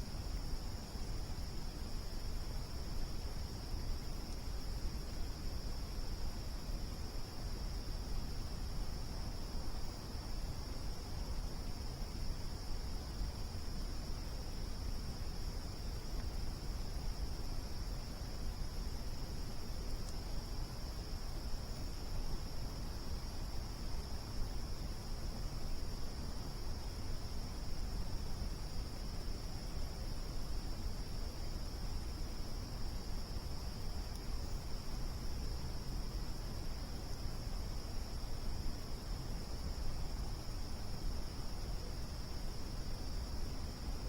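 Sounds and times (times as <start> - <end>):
crickets chirring: 0.0 - 44.0
faint tick: 16.1 - 16.4, 19.9 - 20.2, 34.1 - 34.3.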